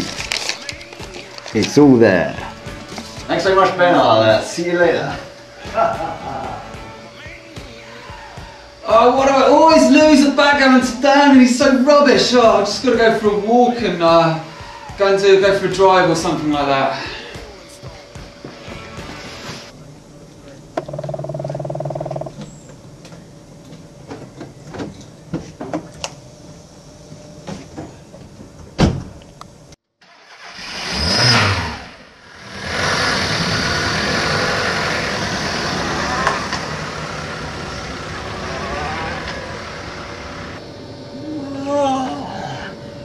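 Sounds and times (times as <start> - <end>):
car engine running: 20.7 - 23.0, 32.3 - 41.0
car passing: 30.1 - 40.8.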